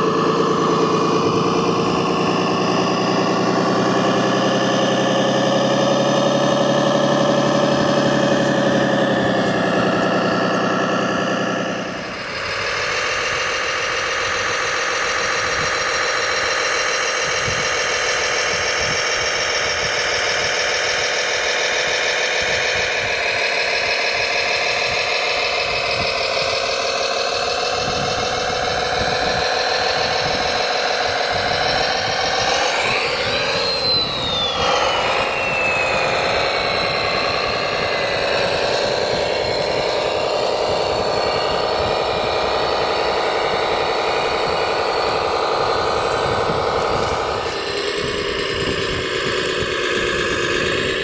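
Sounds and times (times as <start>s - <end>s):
motors and gearing whining: 0.0s - 51.0s
thin high whine gliding downward: 0.0s - 51.0s.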